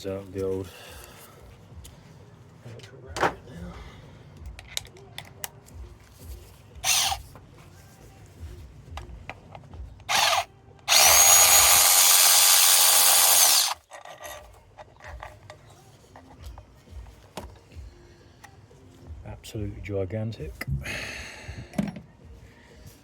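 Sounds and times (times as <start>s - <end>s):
power tool whine: 10.1s - 13.8s.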